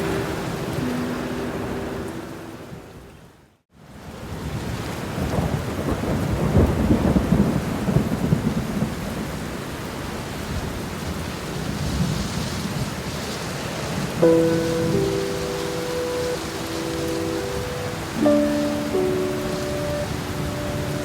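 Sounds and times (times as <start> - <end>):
heavy rain falling: 0.0 - 3.2, 3.8 - 21.0.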